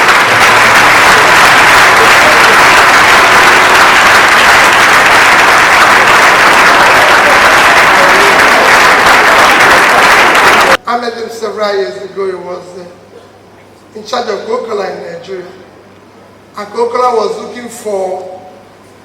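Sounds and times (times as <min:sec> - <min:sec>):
crowd applauding: 0:00.0 - 0:10.8
crowd cheering: 0:00.0 - 0:10.8.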